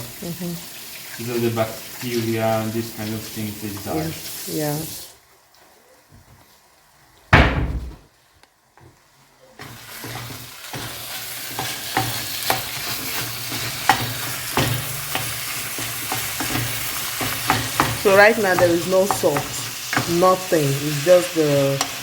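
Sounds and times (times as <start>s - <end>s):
meat sizzling in a pan: 0.0s - 5.7s, 8.2s - 22.0s
loud thump: 7.3s - 8.1s.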